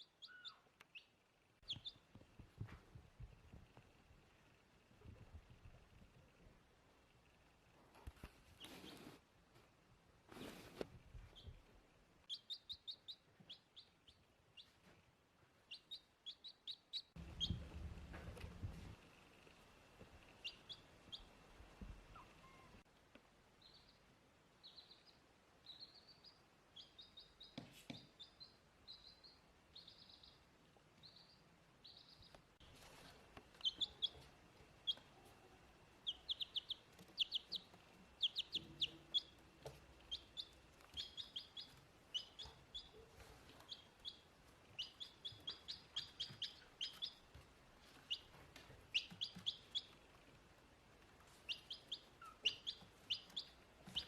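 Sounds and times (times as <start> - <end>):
small birds chirping: 0.0 - 9.2, 10.3 - 22.9, 23.5 - 54.0.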